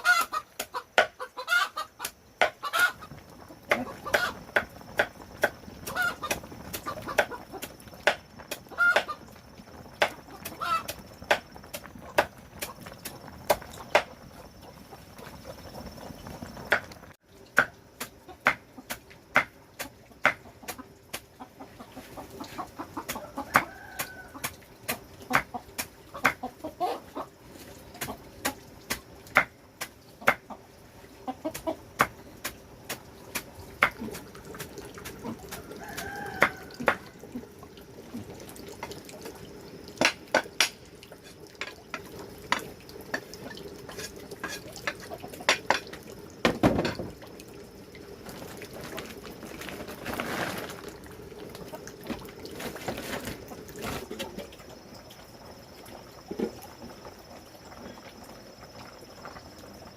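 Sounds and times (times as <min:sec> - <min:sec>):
chickens clucking: 0:00.0 - 0:09.2, 0:10.0 - 0:11.4, 0:18.2 - 0:28.6, 0:30.2 - 0:32.2, 0:33.8 - 0:38.3, 0:43.8 - 0:45.9.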